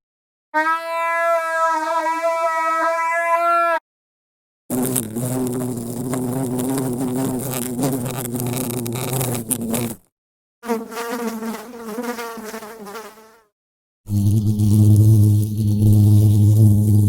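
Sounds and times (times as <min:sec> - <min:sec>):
flying insect buzzing: 0:04.7 - 0:10.0, 0:10.6 - 0:13.5, 0:14.1 - 0:17.0.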